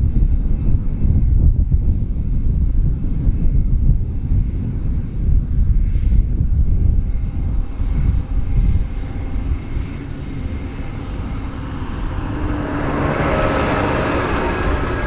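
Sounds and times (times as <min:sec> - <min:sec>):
combine harvester rumbling: 0:07.1 - 0:15.0.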